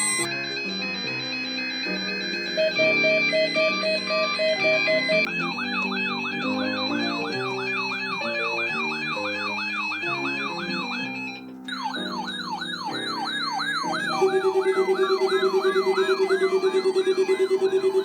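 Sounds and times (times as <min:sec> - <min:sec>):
music with melody: 0:00.0 - 0:18.0
siren-like yelp sweeping: 0:00.0 - 0:18.0
fast-pulsing low tone: 0:11.7 - 0:18.0.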